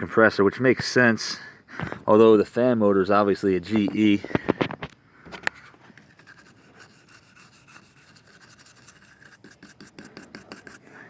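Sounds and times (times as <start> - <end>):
hands rubbing and scratching: 5.5 - 10.8.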